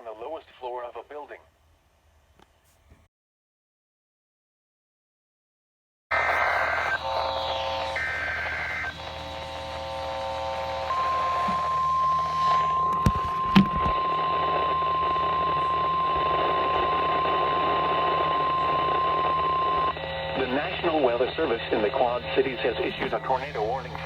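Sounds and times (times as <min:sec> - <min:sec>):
radio static: 0:00.0 - 0:01.4, 0:06.1 - 0:24.0
buzzing digital data bursts: 0:06.1 - 0:13.6
steady warning alarm tone: 0:06.1 - 0:24.0.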